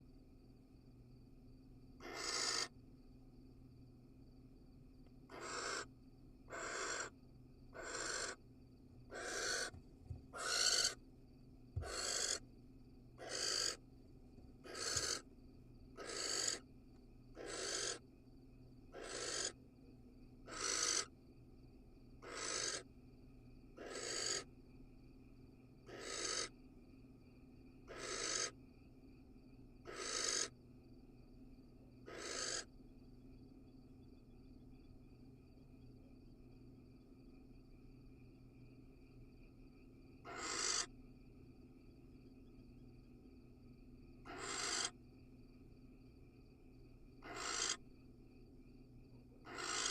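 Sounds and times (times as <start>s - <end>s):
owl hissing: 2.0s - 2.7s, 5.3s - 5.9s, 6.5s - 7.1s, 7.8s - 8.4s, 9.1s - 9.7s, 10.3s - 11.0s, 11.8s - 12.4s, 13.2s - 13.8s, 14.6s - 15.2s, 16.0s - 16.6s, 17.4s - 18.0s, 18.9s - 19.5s, 20.5s - 21.1s, 22.2s - 22.8s, 23.8s - 24.4s, 25.9s - 26.5s, 27.9s - 28.5s, 29.9s - 30.5s, 32.1s - 32.7s, 40.3s - 40.9s, 44.3s - 44.9s, 47.2s - 47.8s, 49.4s - 49.9s.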